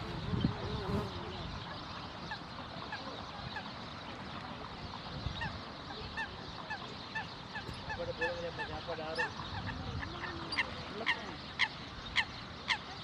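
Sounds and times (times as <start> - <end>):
birds screeching: 5.1 - 13.0.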